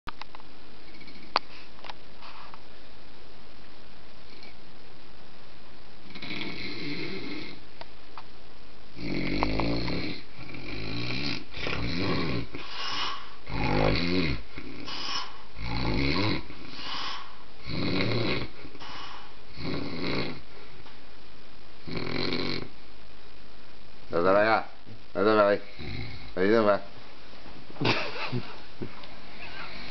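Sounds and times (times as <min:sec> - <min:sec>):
dog snoring: 0:06.0 - 0:07.6, 0:09.0 - 0:20.5, 0:21.8 - 0:22.7, 0:25.5 - 0:26.6.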